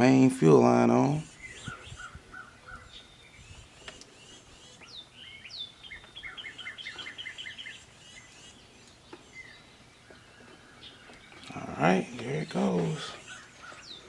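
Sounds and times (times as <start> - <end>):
birds singing: 0.0 - 14.0.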